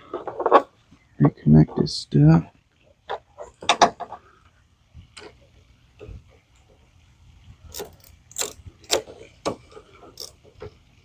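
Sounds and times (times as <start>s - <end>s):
hand tools clicking and clinking: 7.7s - 10.5s.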